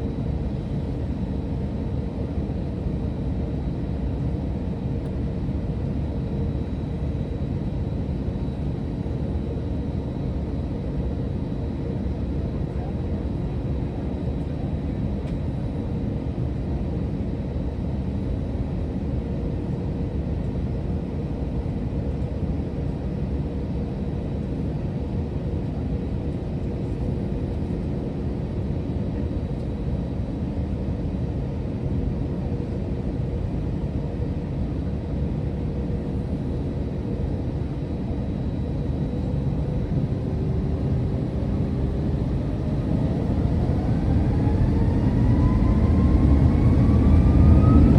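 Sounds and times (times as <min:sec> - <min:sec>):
airplane cabin engine rumble: 0:00.0 - 0:17.2, 0:17.8 - 0:47.9.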